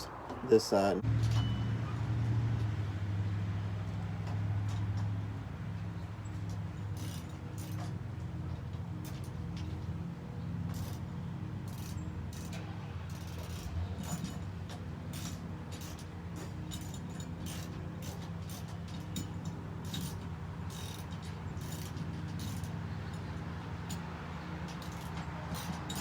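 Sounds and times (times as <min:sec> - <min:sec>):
ratchet wrench clicking: 0:07.0 - 0:07.9, 0:11.7 - 0:14.3, 0:16.7 - 0:22.8, 0:24.7 - 0:26.0.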